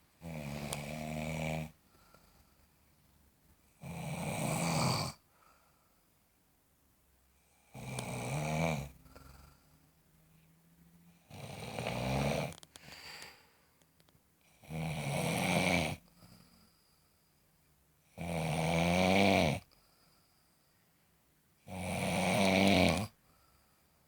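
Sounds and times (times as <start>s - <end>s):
loud snoring: 0.2s - 1.8s, 3.8s - 5.2s, 7.6s - 9.6s, 11.1s - 12.6s, 14.5s - 16.0s, 18.1s - 19.7s, 21.6s - 23.2s.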